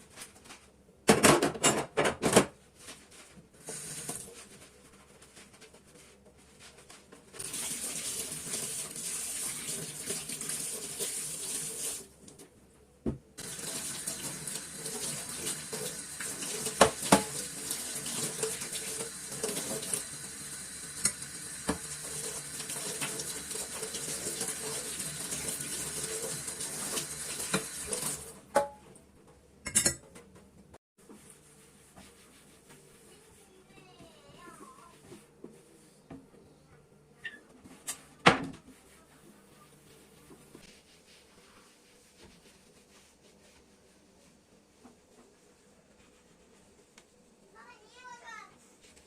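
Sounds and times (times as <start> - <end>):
tap running into sink: 13.1 - 20.0, 21.0 - 24.5, 26.7 - 28.2
dishes and cutlery clinking: 29.6 - 30.3.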